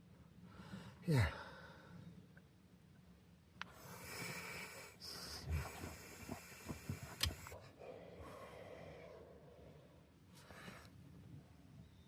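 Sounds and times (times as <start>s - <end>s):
breathing with hissing exhales: 3.8s - 9.5s.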